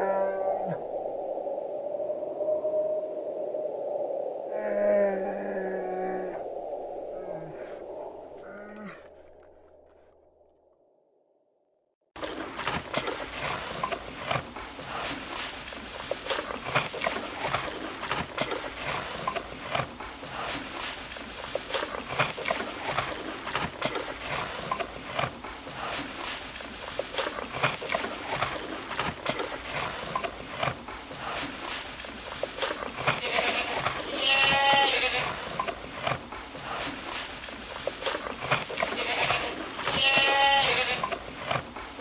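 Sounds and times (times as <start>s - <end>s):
animal calls and clicks: 12.2s - 42.0s.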